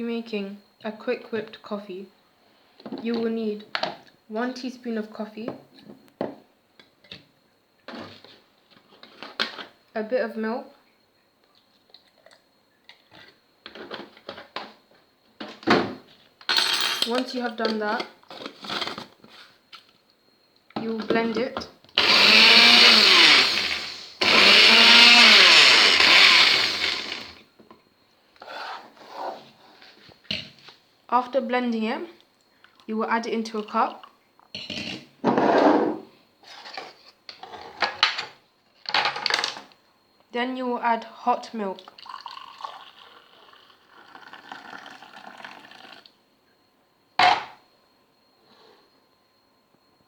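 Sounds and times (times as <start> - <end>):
electric blender whirring: 22.0 - 27.4
milk pouring into a cup: 41.8 - 46.1.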